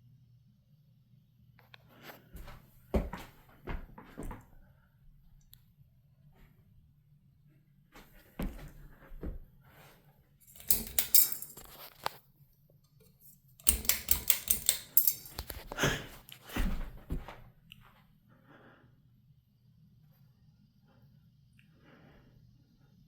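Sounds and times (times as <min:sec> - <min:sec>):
ceiling fan humming: 0:10.4 - 0:12.1, 0:12.9 - 0:18.8
rapid clicking and rattling: 0:13.0 - 0:15.6.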